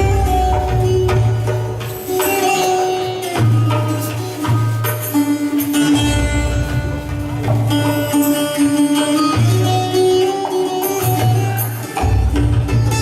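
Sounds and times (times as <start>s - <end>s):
hand drum beat: 0.0s - 13.0s
sitar-like plucked strings: 0.0s - 13.0s
heavy bass: 5.8s - 8.1s.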